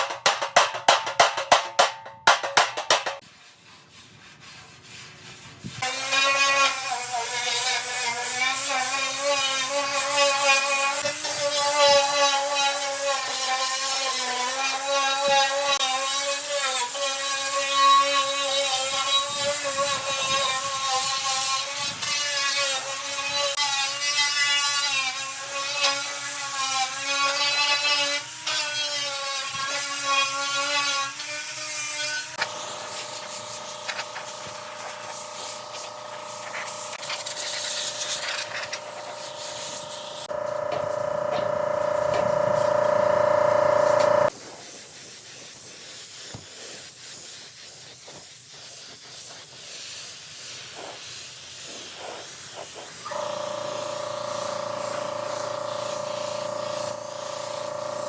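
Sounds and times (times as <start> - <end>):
electric power tool whining: 32.4 - 44.3, 53.1 - 58.0.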